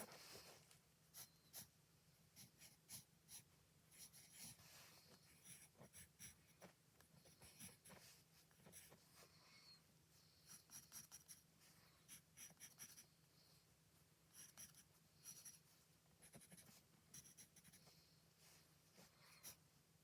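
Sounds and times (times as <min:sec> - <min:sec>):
faint low hum: 0:00.0 - 0:20.0
drawing tool scratching paper: 0:02.4 - 0:04.6, 0:05.3 - 0:09.0, 0:10.5 - 0:11.4, 0:12.1 - 0:13.0, 0:14.4 - 0:15.6, 0:16.2 - 0:17.8.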